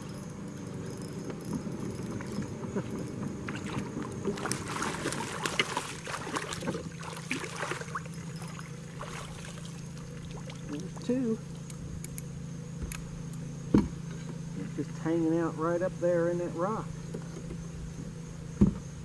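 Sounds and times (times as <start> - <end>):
steady low hum: 0.0 - 19.0
water sloshing against kayak hull: 1.5 - 11.6.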